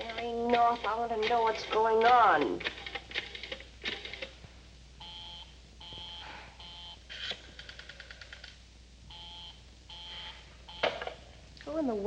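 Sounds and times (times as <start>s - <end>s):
telephone busy signal: 5.0s - 7.0s, 9.1s - 11.0s.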